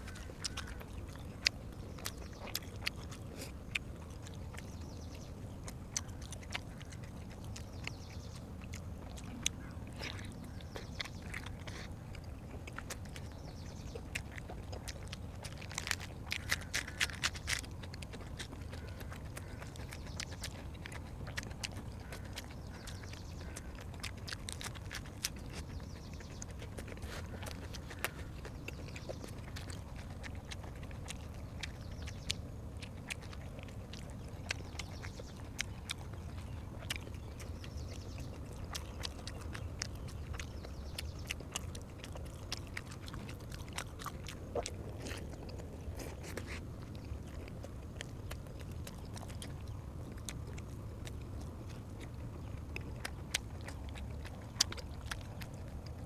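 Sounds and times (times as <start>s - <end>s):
mouth clicks and smacks: 0.0s - 56.0s
person chewing food: 0.0s - 56.0s.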